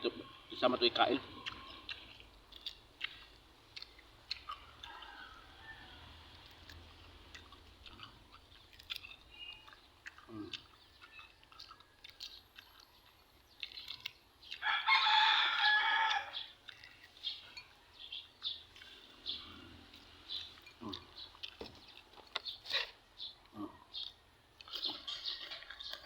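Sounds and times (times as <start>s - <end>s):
rooster crowing: 4.6s - 6.6s, 14.6s - 16.6s.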